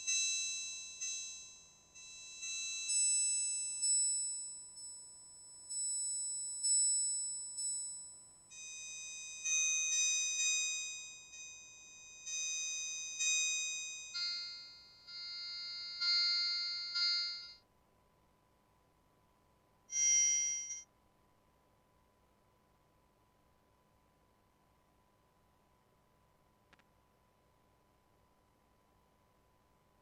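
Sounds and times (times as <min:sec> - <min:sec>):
bell-like synthesizer chords: 0:00.0 - 0:17.6, 0:19.9 - 0:20.8.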